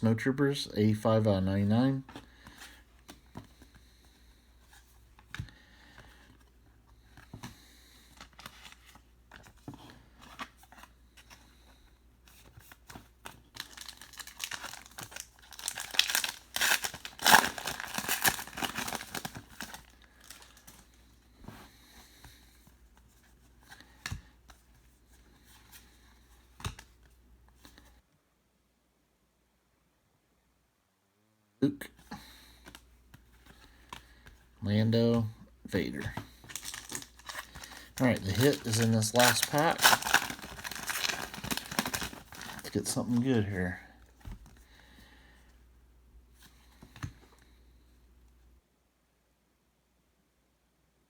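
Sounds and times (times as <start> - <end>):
cards rustling and clicking: 2.0 - 27.9, 32.5 - 34.5, 35.1 - 44.6
foil wrapper tearing and crinkling: 13.5 - 20.8, 36.4 - 43.4.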